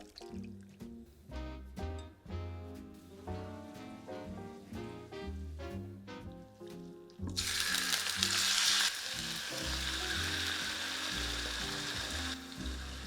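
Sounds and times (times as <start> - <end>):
food sizzling in frying pan: 7.4 - 13.0.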